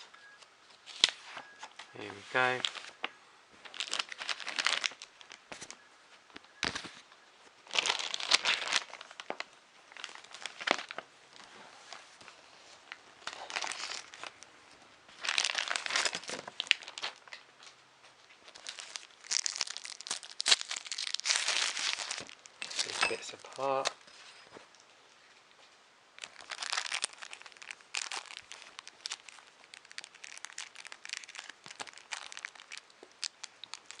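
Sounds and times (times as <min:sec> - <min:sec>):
packaging crinkling: 0:01.9 - 0:05.8, 0:07.6 - 0:12.3, 0:12.9 - 0:14.5, 0:15.1 - 0:17.5, 0:18.3 - 0:24.0, 0:26.2 - 0:34.0.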